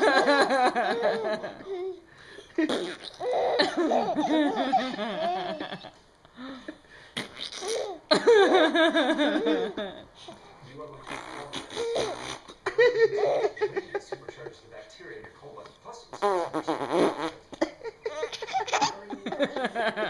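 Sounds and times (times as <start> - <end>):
person laughing hard: 8.1 - 10.0.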